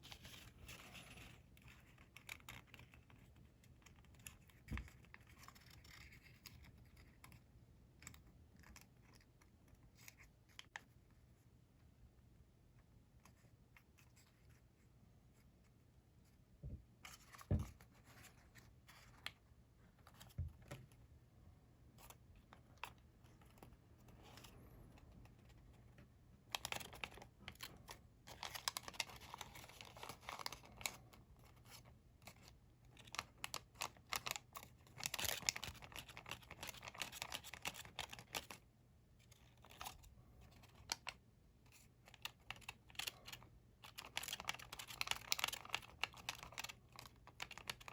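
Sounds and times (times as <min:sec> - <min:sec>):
paper folding and crackling: 0:00.0 - 0:10.9, 0:22.0 - 0:47.9.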